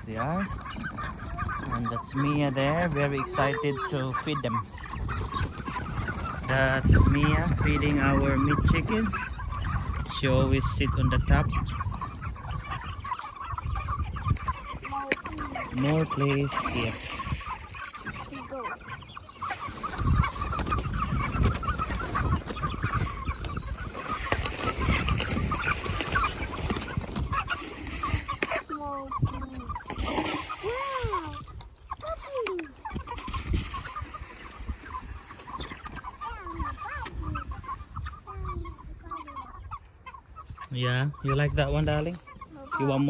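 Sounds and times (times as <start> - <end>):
chickens clucking and peeping: 0.0 - 43.0.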